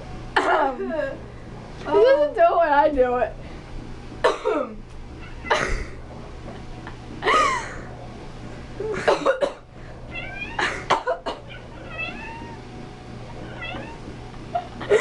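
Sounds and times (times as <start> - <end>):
person coughing: 4.2 - 4.8, 5.5 - 6.0, 8.9 - 9.6
cat meowing: 5.2 - 5.6, 10.1 - 10.7, 11.4 - 12.6, 13.4 - 14.0.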